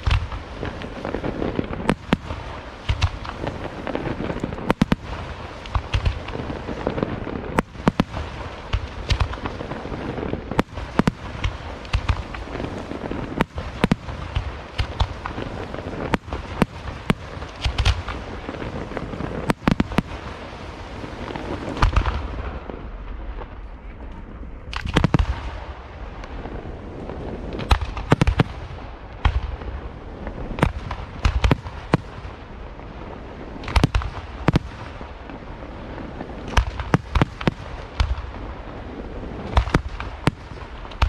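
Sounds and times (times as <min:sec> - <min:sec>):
fireworks bangs and booms: 0:00.0 - 0:41.0
fireworks crackling: 0:00.0 - 0:41.0.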